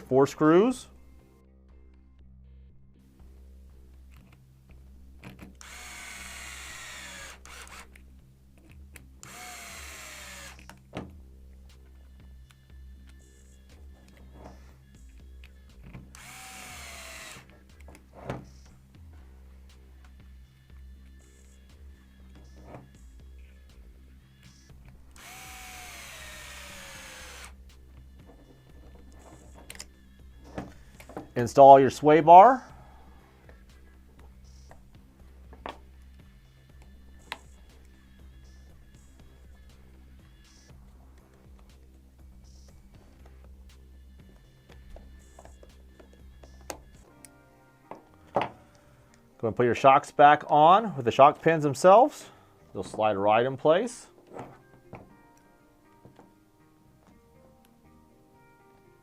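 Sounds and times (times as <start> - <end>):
quiet background music: 0.0 - 59.0
power driver whining: 5.2 - 8.1, 8.7 - 10.9, 15.4 - 18.8, 24.7 - 31.4
electric screwdriver whirring: 5.6 - 8.0, 9.2 - 10.8, 16.1 - 18.0, 25.1 - 27.6.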